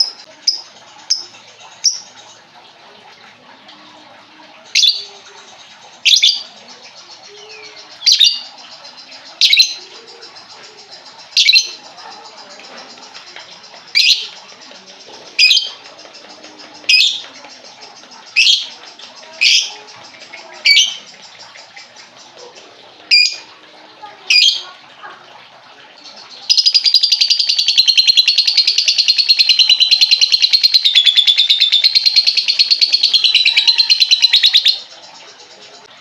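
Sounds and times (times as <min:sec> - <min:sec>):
bird chattering song: 0:00.0 - 0:02.8, 0:04.4 - 0:25.2, 0:25.9 - 0:35.9
bird chirping: 0:04.6 - 0:23.5, 0:26.1 - 0:35.9.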